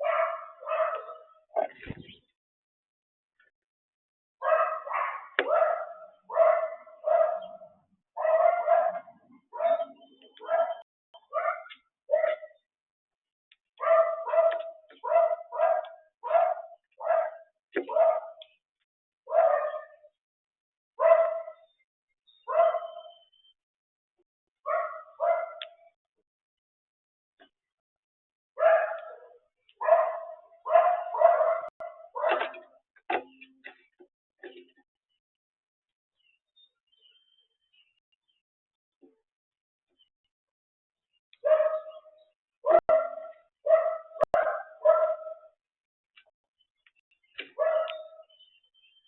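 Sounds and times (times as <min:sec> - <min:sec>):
dog barking: 0:00.0 - 0:01.7, 0:04.4 - 0:12.7, 0:13.8 - 0:18.6, 0:19.3 - 0:20.2, 0:21.0 - 0:21.7, 0:22.4 - 0:23.2, 0:24.6 - 0:26.0, 0:28.6 - 0:33.3, 0:41.4 - 0:45.6, 0:47.4 - 0:48.3.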